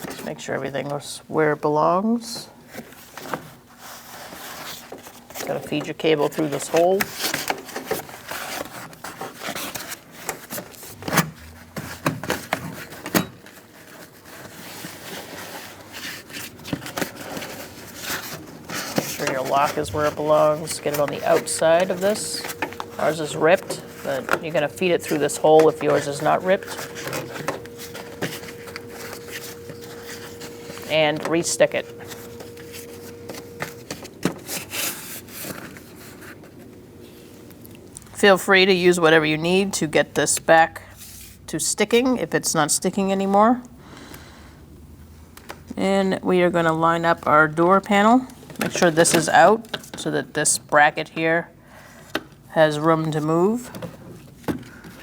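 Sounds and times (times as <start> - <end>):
hands rubbing plastic sheet: 7.6 - 37.2.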